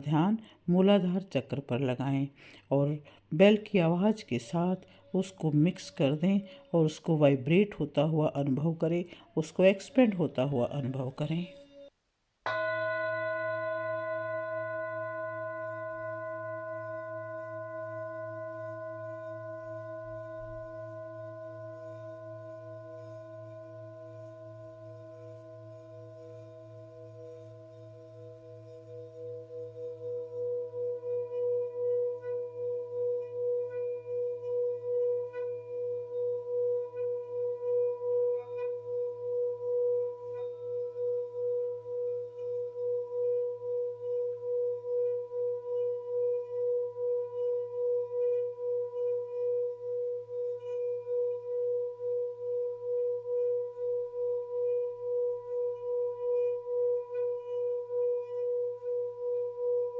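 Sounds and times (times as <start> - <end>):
singing bowl sustained tone: 12.5 - 59.9.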